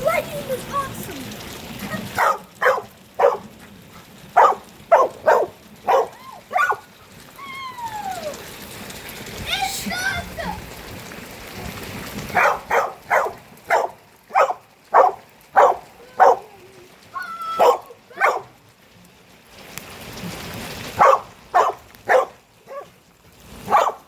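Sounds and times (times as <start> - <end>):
rain falling: 0.0 - 24.0
dog barking: 2.0 - 3.5, 4.4 - 6.9, 12.3 - 16.4, 17.6 - 18.6, 21.0 - 23.0, 23.6 - 24.0.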